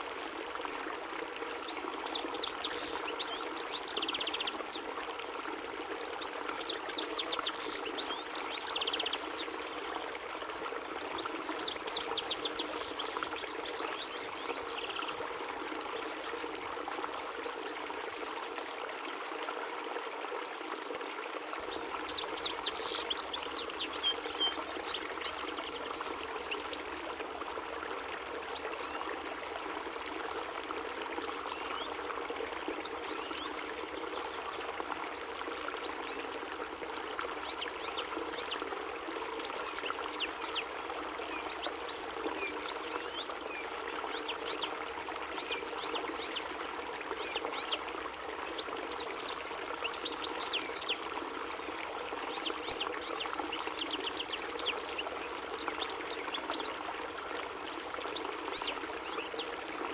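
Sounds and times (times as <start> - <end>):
goldfinch twittering: 1.8 - 4.8, 6.4 - 9.5, 21.9 - 27.0.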